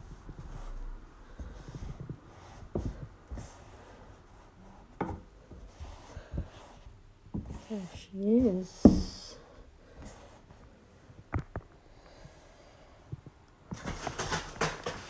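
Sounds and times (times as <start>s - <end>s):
paper and cardboard rustling: 13.8s - 15.0s.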